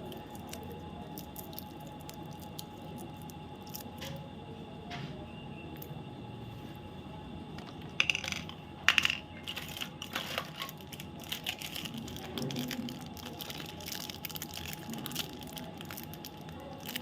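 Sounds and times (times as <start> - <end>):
packaging crackling and crinkling: 0.0 - 4.2, 9.4 - 17.0.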